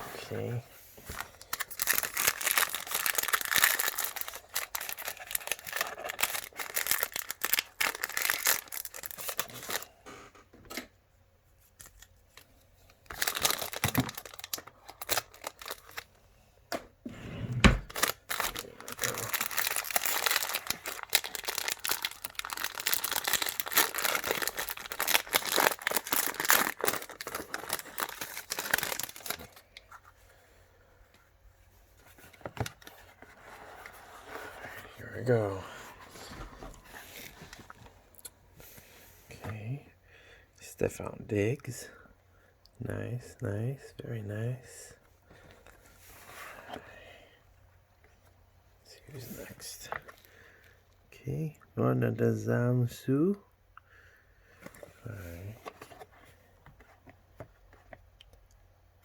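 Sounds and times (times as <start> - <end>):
wrapper crinkling: 1.2 - 9.9, 13.0 - 16.1, 17.8 - 29.7
packaging tearing: 1.4 - 9.9, 13.1 - 16.0, 17.8 - 29.6.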